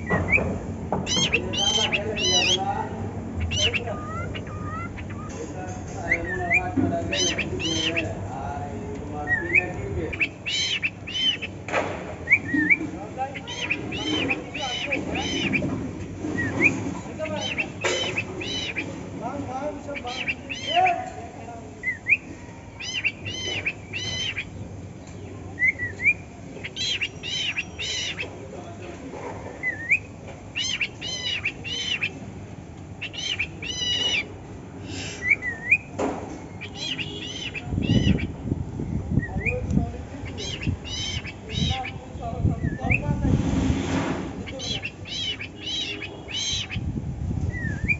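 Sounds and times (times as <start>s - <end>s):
cockatiel singing chirps and whistle: 0.0s - 2.7s, 3.4s - 5.4s, 6.0s - 8.1s, 9.2s - 11.6s, 12.2s - 15.7s, 16.4s - 18.9s, 21.8s - 24.6s, 25.6s - 28.3s, 29.6s - 32.2s, 33.0s - 34.3s, 35.2s - 35.9s, 36.6s - 38.3s, 39.2s - 39.6s, 40.2s - 42.0s, 42.6s - 43.1s, 44.5s - 46.8s, 47.5s - 47.9s
low warbling chatter: 0.0s - 47.9s.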